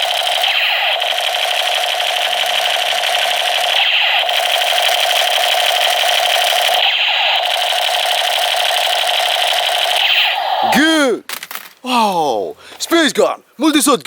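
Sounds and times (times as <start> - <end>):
electronic alarm buzzing: 0.0 - 10.7.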